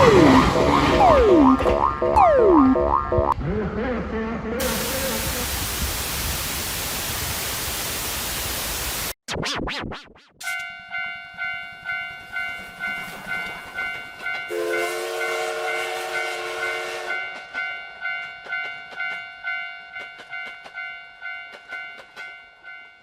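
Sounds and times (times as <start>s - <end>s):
passing train rush: 0.0s - 2.4s, 3.4s - 7.0s, 11.7s - 19.2s
crossing warning bell ringing: 0.0s - 3.2s, 10.4s - 23.0s
train horn: 14.5s - 17.4s
train wheel clicks: 17.3s - 22.7s.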